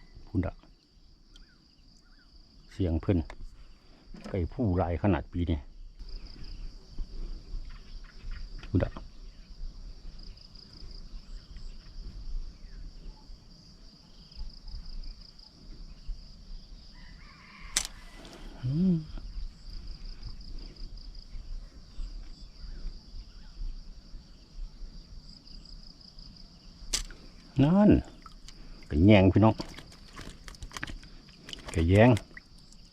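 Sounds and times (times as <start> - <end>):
insects chirring: 0.0 - 32.9
sharp click: 17.7 - 18.0, 26.9 - 27.2.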